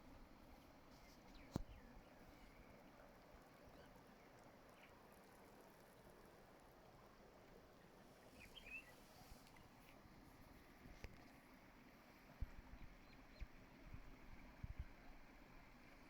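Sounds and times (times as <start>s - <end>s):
slowly flowing water: 0.0s - 16.0s
bird chirp: 8.3s - 9.2s.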